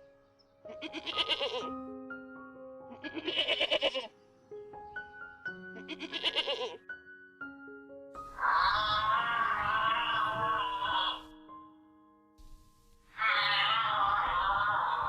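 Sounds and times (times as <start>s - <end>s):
background keyboard music: 0.0s - 15.0s
quavering bleats: 0.7s - 1.7s, 2.9s - 4.1s, 5.8s - 6.8s, 8.2s - 11.4s, 13.1s - 15.0s.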